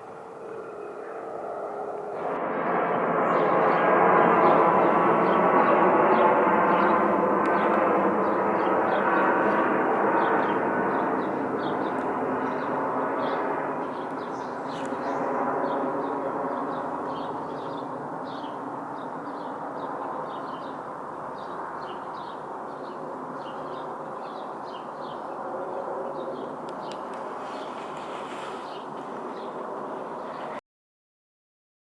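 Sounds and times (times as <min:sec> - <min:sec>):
jet airliner engine rush: 0:00.0 - 0:30.6
small birds chirping: 0:05.2 - 0:30.6.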